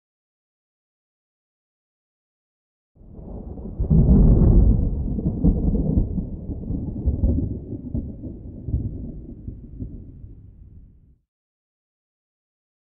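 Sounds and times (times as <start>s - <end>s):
deep thunder-like rumble: 3.0s - 11.2s.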